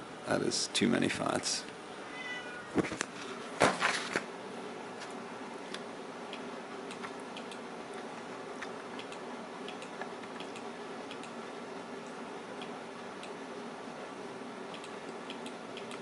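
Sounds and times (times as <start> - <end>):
computer equipment humming: 0.0 - 16.0
rustling noises: 2.7 - 4.3.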